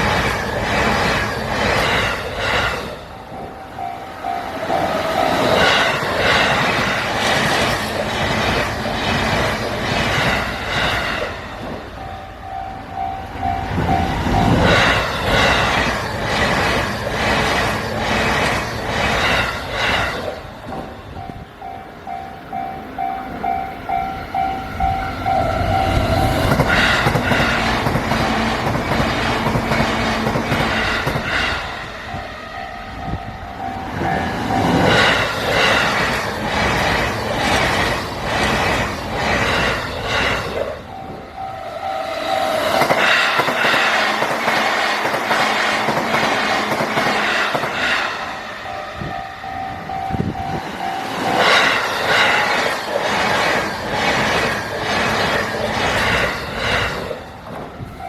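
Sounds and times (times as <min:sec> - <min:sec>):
electric train passing: 0:00.0 - 0:58.0
level crossing warning bell: 0:03.0 - 0:07.2, 0:10.6 - 0:15.8, 0:20.4 - 0:38.0, 0:40.8 - 0:44.2, 0:46.7 - 0:52.7.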